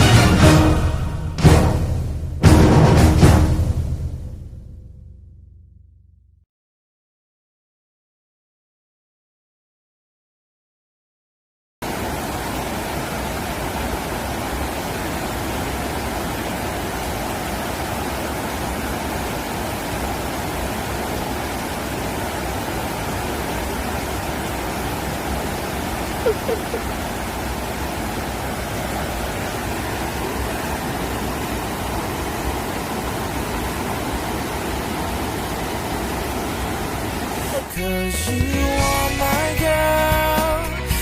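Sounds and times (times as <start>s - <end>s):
rushing water: 0.0s - 1.8s, 11.8s - 41.0s.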